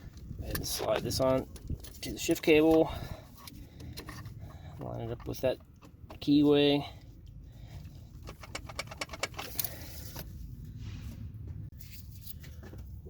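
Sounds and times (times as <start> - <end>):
clicks and scrapes of shifter parts: 0.0 - 10.6
low steady rumble: 0.0 - 13.0.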